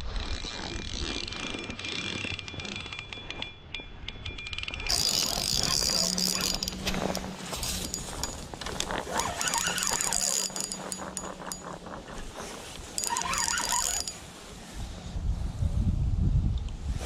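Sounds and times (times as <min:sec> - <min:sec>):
fishing reel clicking: 0:04.7 - 0:14.2.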